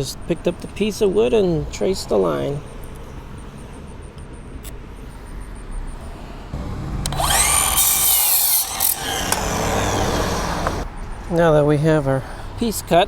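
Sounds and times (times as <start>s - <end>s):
power saw cutting wood: 6.6s - 10.8s.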